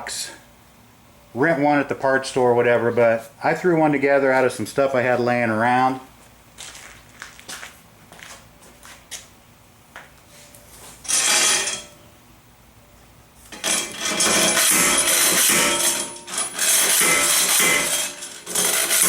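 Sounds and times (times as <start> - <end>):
loud metal clanking and scraping: 11.0 - 12.0, 13.5 - 19.0
metal clatter: 11.0 - 12.0, 13.5 - 19.0.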